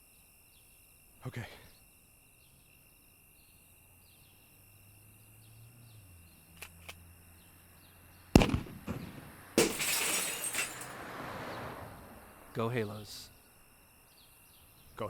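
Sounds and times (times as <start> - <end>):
loud crash: 8.4 - 11.0
glass shattering: 9.6 - 11.0.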